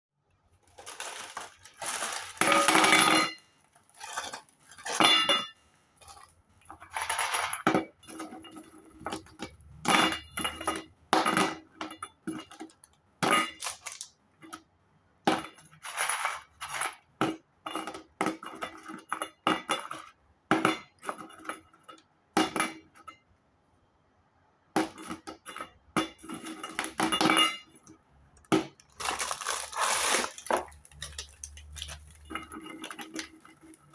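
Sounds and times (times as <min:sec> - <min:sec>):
tablets clattering against a dish: 0:00.7 - 0:14.1, 0:24.8 - 0:33.9.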